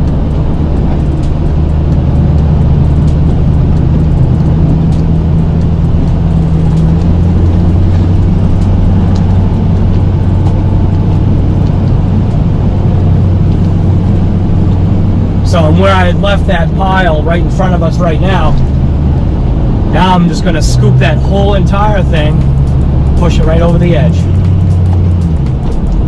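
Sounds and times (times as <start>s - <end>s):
plow pushing snow: 0.0s - 26.0s
truck engine running: 0.0s - 26.0s.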